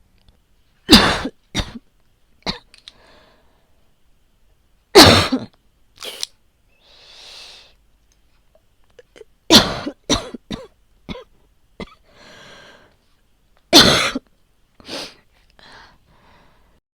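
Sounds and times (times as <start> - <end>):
person coughing: 0.9 - 1.8, 5.0 - 5.6, 9.0 - 12.0, 13.8 - 14.3
person breathing in: 2.9 - 3.8, 6.7 - 7.8, 12.1 - 13.0, 14.8 - 16.8.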